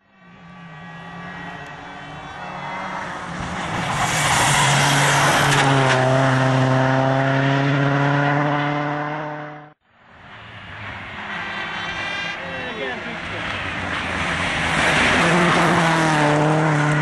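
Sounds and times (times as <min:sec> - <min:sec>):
rally car engine at high revs: 0:02.8 - 0:09.8, 0:13.2 - 0:17.0.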